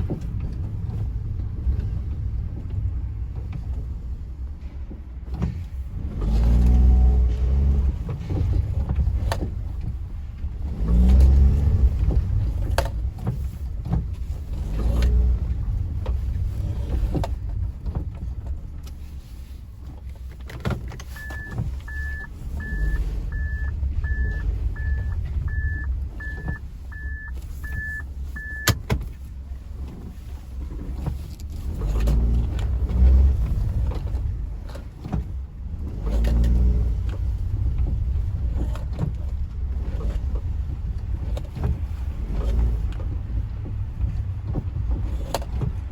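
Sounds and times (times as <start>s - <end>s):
car engine and road rumble: 0.0s - 45.9s
short electronic beeps: 21.1s - 28.8s.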